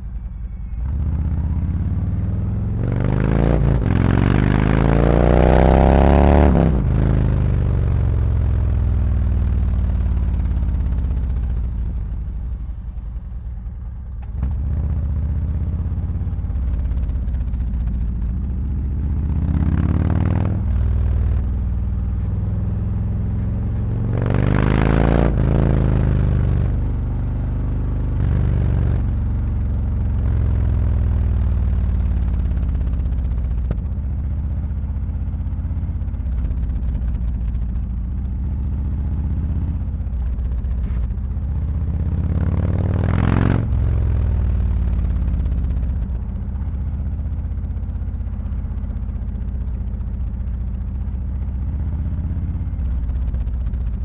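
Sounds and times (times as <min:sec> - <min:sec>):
motorcycle engine exhaust: 0:00.0 - 0:54.0.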